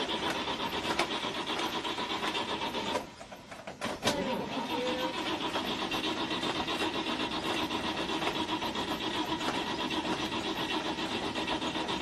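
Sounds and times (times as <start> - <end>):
car engine cranking: 4.1 - 12.0.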